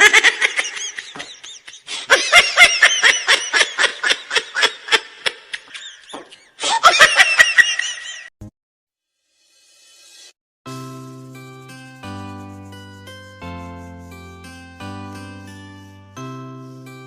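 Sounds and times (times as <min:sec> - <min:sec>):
high-pitched laughter: 0:00.0 - 0:08.3.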